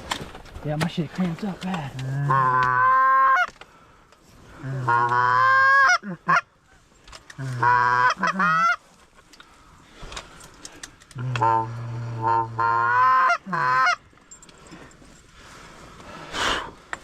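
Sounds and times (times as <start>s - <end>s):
goose call moans: 2.0s - 3.5s, 4.5s - 6.5s, 7.4s - 8.8s, 11.2s - 14.0s.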